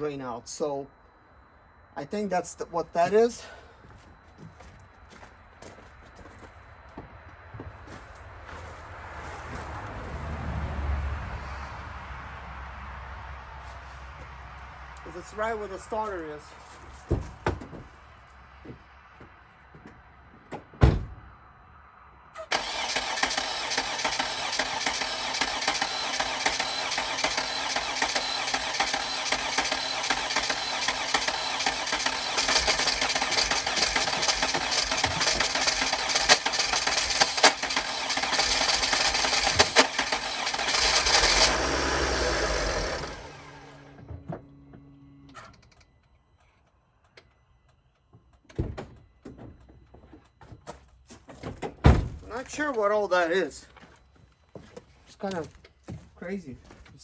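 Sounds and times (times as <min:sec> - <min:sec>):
thump: 0:17.1 - 0:17.9, 0:20.5 - 0:21.2, 0:51.6 - 0:52.3
diesel engine sputtering: 0:22.5 - 0:45.8.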